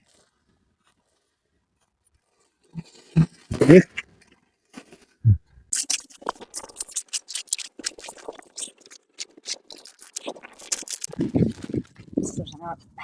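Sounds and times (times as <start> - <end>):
foam scraping and crunching: 5.7 - 12.6.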